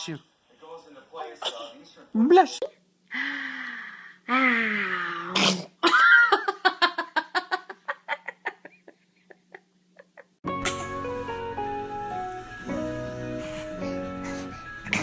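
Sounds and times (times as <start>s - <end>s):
person laughing: 5.8s - 11.0s.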